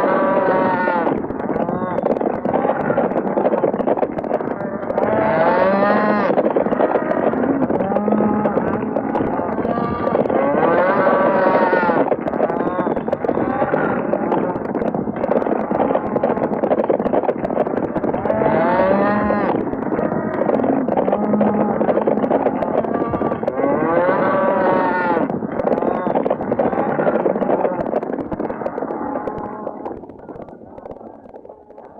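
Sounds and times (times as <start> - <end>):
cattle bellowing: 0.0 - 16.6, 18.0 - 31.9
rumble of running herd: 0.0 - 31.9
loud drawn-out moos: 4.6 - 12.8, 18.2 - 25.3.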